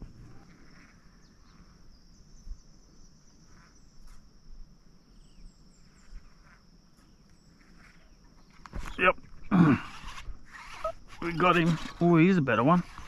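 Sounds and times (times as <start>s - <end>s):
faint bird chirps: 0.0s - 9.5s
insects droning: 0.0s - 13.0s.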